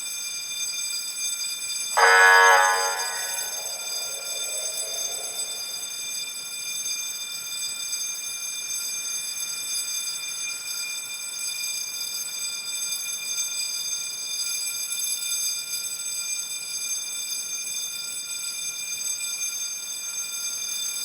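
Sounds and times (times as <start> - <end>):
burglar alarm ringing: 2.0 - 5.9.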